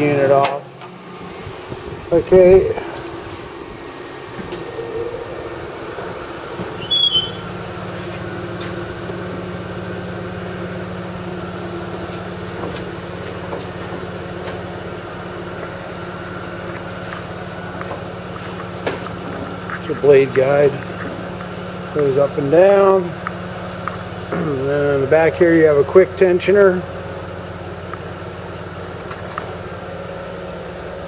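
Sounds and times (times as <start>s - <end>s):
electric motor hum: 0.0s - 31.0s
high squeak: 6.7s - 7.5s.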